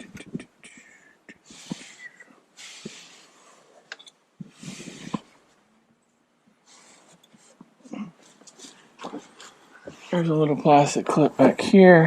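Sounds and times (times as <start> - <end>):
short breathy hisses: 1.4 - 3.4.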